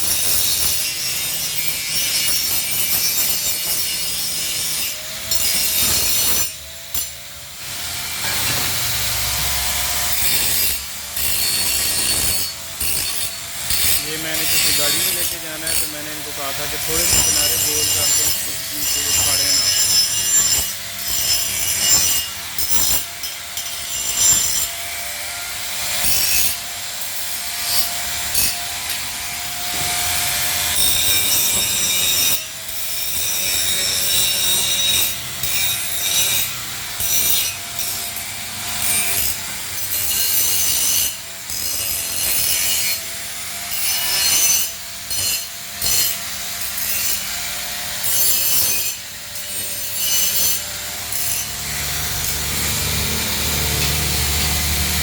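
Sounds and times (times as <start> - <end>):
disc grinding steel: 8.0 - 24.7
angle grinder motor whine: 48.9 - 55.0.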